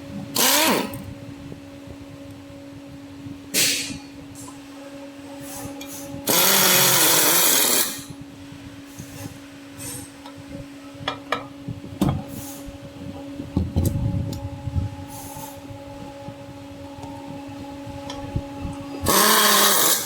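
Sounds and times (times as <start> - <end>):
low hum: 0.0 - 20.0
small electric motor whirring: 0.3 - 1.1, 6.2 - 8.2, 19.0 - 20.0.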